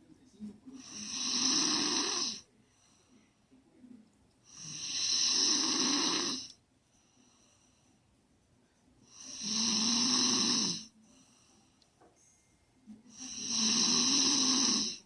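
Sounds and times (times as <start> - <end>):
quiet breathing: 0.0 - 15.0
snoring with low rattle: 0.8 - 2.4, 4.5 - 6.5, 9.1 - 10.9, 13.2 - 15.0.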